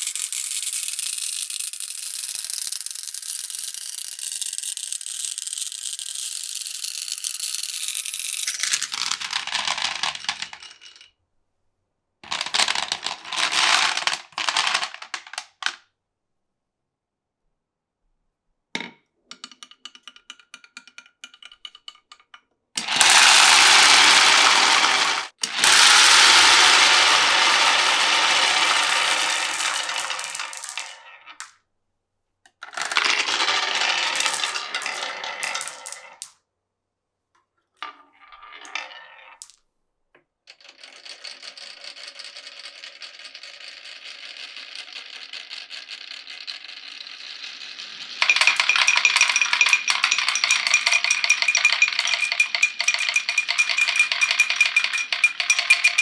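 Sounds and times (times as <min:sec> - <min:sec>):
marbles rolling down a marble run: 0:00.0 - 0:11.1, 0:12.2 - 0:15.8, 0:22.8 - 0:31.6, 0:32.6 - 0:36.4, 0:37.8 - 0:39.6, 0:40.5 - 0:56.0.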